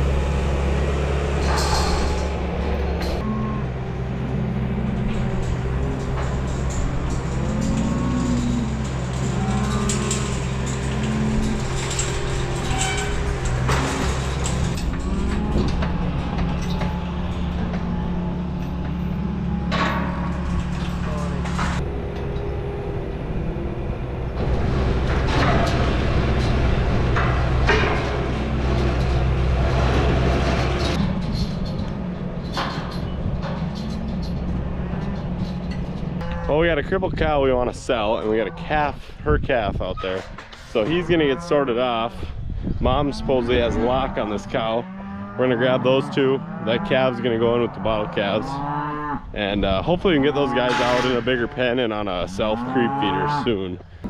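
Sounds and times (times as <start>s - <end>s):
bangs and clanks: 0.0s - 23.2s, 23.8s - 38.8s, 43.0s - 54.0s
vehicle engine running: 0.0s - 31.0s.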